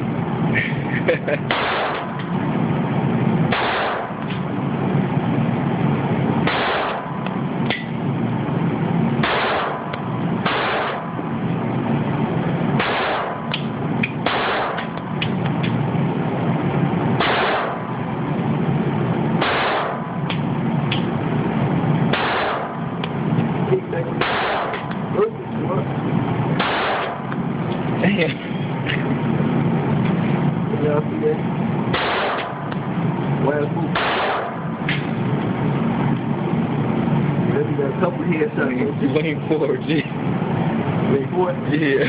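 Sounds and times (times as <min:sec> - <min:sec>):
pistol shots echoing: 0:01.5 - 0:02.1, 0:03.5 - 0:04.2, 0:06.5 - 0:07.2, 0:09.2 - 0:11.1, 0:12.8 - 0:13.5, 0:14.2 - 0:15.0, 0:17.2 - 0:17.8, 0:19.4 - 0:20.1, 0:22.1 - 0:22.8, 0:24.2 - 0:24.9, 0:26.6 - 0:27.3, 0:31.9 - 0:32.7, 0:34.0 - 0:34.6.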